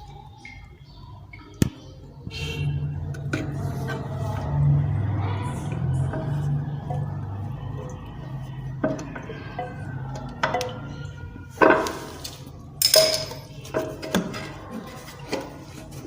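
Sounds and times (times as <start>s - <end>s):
hard objects clinking together: 11.6s - 14.4s.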